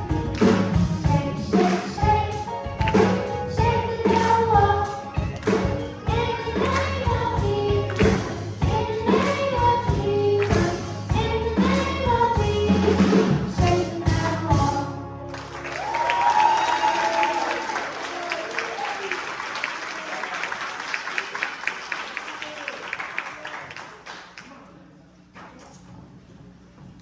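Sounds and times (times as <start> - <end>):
children's choir singing: 0.0 - 14.4
band accompaniment: 0.0 - 17.4.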